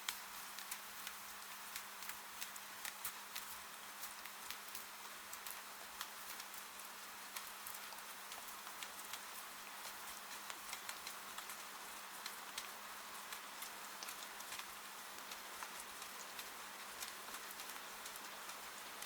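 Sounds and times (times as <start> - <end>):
raindrops ticking: 7.3 - 19.0.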